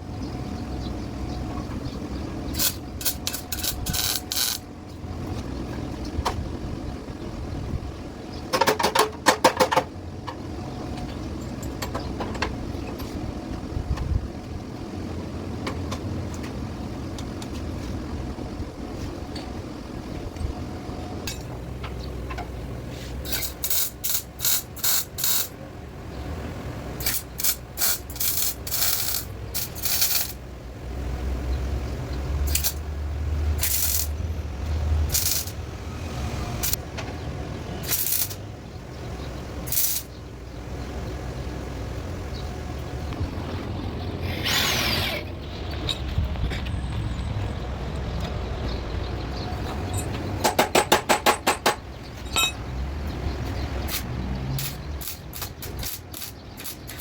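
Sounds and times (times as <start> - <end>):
welding crackling hiss: 2.5 - 4.6, 22.8 - 25.6, 26.9 - 30.5, 32.4 - 36.8, 37.8 - 38.4, 39.5 - 40.2, 53.9 - 57.0.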